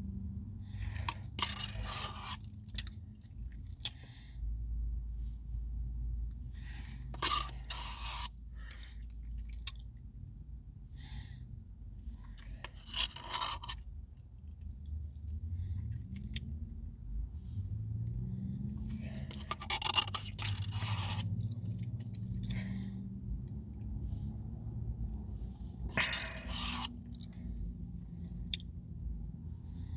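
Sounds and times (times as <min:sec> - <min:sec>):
spoon scraping ice cream cup: 0:00.8 - 0:03.0, 0:07.1 - 0:08.8, 0:12.2 - 0:13.8, 0:19.0 - 0:22.6, 0:25.9 - 0:27.4
eating and chewing: 0:00.8 - 0:04.2, 0:06.6 - 0:10.0, 0:12.0 - 0:16.8, 0:18.7 - 0:23.6, 0:25.8 - 0:28.8
low wavering hum: 0:14.0 - 0:29.9.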